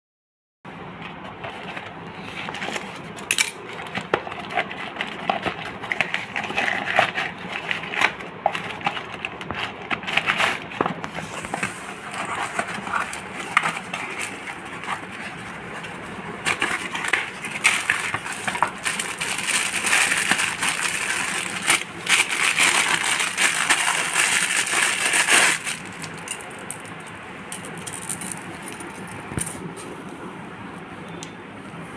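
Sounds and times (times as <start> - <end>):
packaging crinkling and tearing: 2.4 - 28.4.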